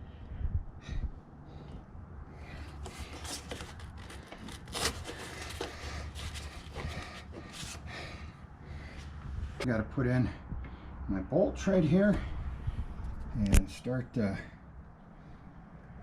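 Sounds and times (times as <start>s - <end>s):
low steady hum: 0.0s - 16.0s
hardware scraping and rubbing: 2.6s - 7.9s.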